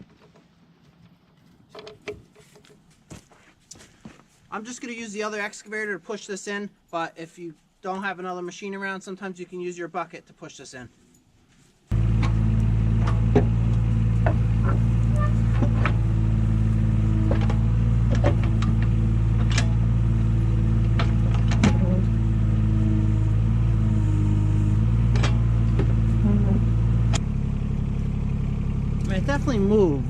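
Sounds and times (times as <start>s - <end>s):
excavator engine running: 11.9s - 30.0s.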